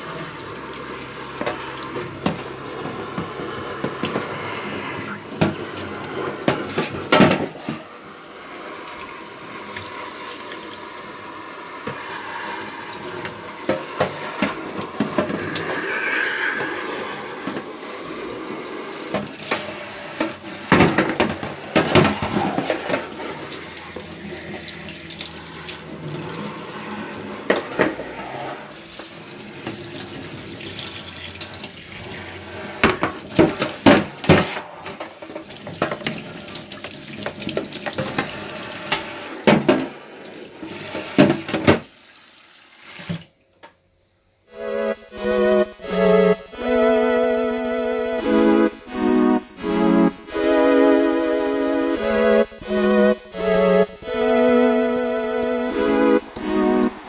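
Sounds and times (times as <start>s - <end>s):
things clattering in a sink: 0.0s - 42.0s, 42.8s - 43.8s
water running from a tap: 0.0s - 43.8s.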